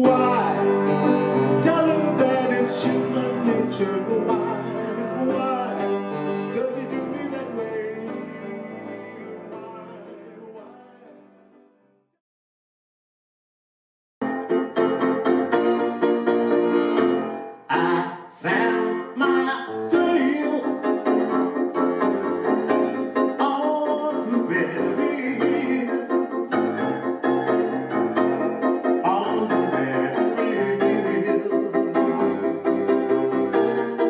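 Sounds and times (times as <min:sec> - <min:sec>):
keyboard chords over bass line: 0:00.0 - 0:11.2, 0:14.2 - 0:34.0.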